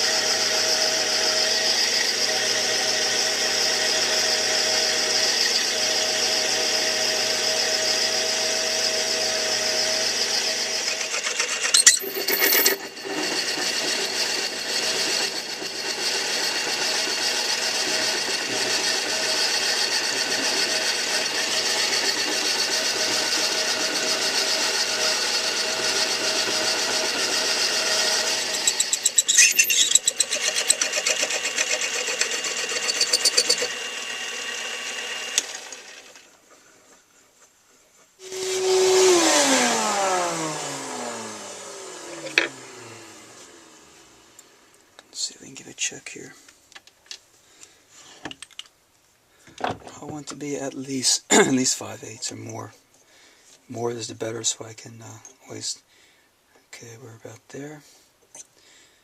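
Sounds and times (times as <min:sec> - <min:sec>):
drill bit cutting metal: 0:00.0 - 0:36.2, 0:38.2 - 0:40.6
electric motor running: 0:00.0 - 0:36.3, 0:38.2 - 0:44.4.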